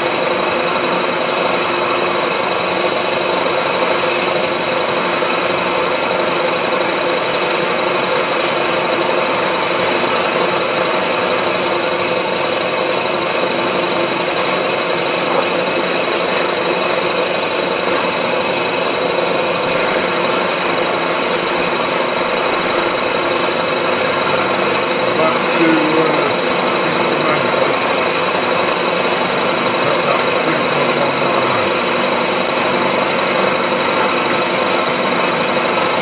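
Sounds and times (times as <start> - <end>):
milling machine cutting steel: 0.0 - 36.0
thin high squeal: 19.6 - 31.4.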